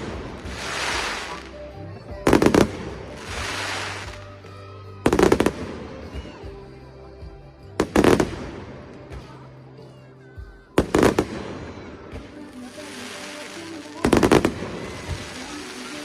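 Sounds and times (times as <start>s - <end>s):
fireworks bursting: 0.0s - 4.4s, 5.0s - 6.3s, 7.8s - 9.3s, 10.8s - 16.0s
music: 0.0s - 16.0s.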